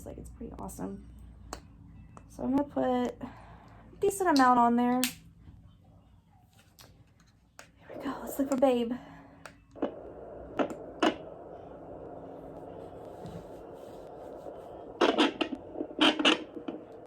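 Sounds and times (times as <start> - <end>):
doppler speaker static hiss: 0.0 - 17.0
probe handling crackles: 6.5 - 17.0.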